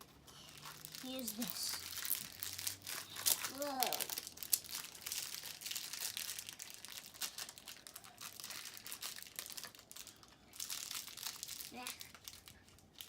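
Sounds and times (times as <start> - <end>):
packaging crinkling and tearing: 0.4 - 13.0.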